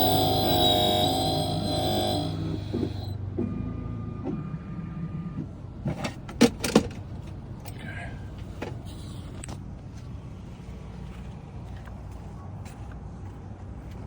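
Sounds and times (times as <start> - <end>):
steady low hum: 0.0 - 3.2.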